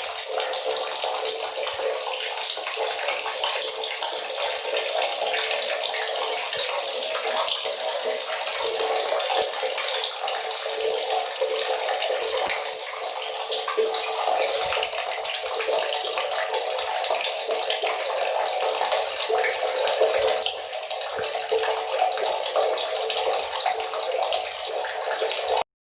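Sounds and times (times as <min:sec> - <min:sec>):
tap water running and splashing: 0:00.0 - 0:25.7.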